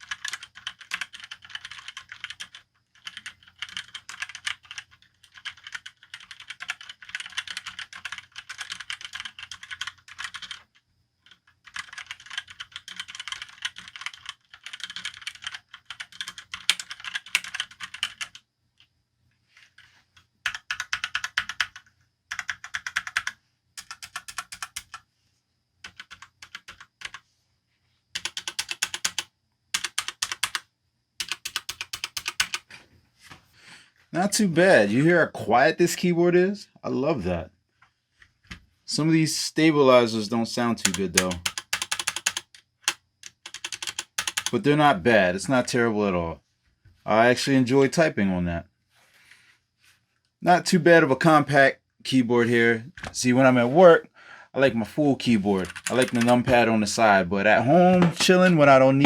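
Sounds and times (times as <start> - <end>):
fast typing on mechanical keyboard: 0.0 - 18.4, 20.4 - 25.0, 25.8 - 27.2, 28.2 - 30.6, 31.2 - 32.7, 40.8 - 44.6, 55.6 - 56.6.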